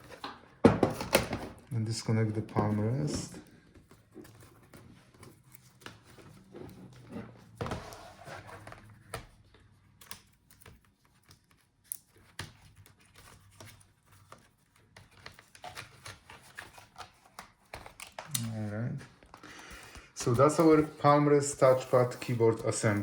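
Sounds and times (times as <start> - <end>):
plastic laptop parts clicking: 8.6 - 18.5.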